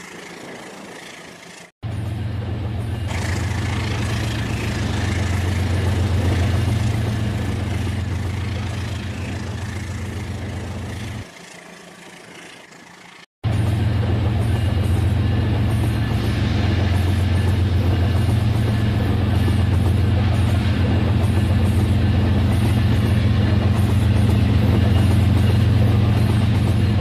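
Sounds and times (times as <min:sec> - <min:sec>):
toy train mechanical hum: 0:00.0 - 0:01.7, 0:07.7 - 0:13.3
toy train rattling: 0:11.2 - 0:13.3.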